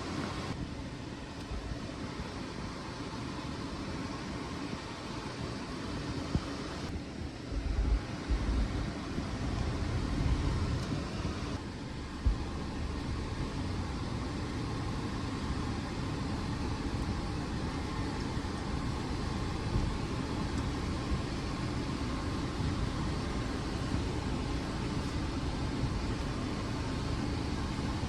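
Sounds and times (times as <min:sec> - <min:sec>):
car engine low rumble: 0:00.0 - 0:28.0.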